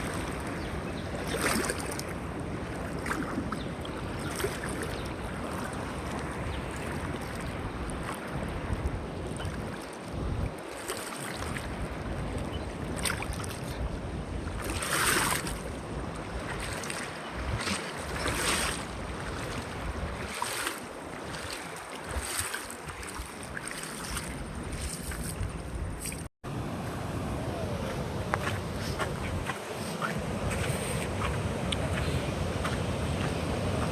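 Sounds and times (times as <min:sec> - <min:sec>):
wind buffeting microphone: 0:00.0 - 0:10.7, 0:11.4 - 0:33.9.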